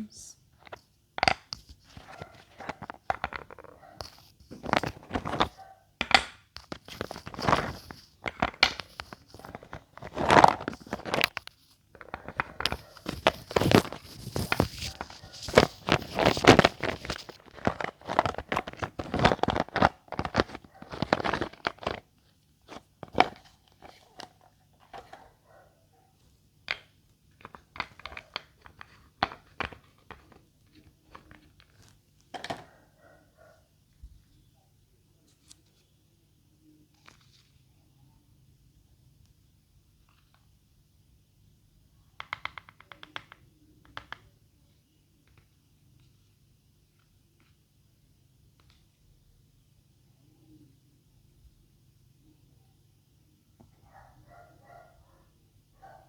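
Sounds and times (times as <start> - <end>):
crunching and crackling: 2.0 - 22.0.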